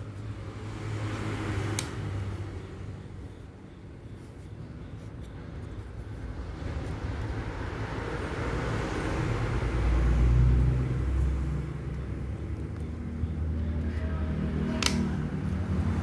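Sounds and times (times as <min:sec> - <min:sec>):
passing vehicle engine rumble: 0:06.2 - 0:16.0.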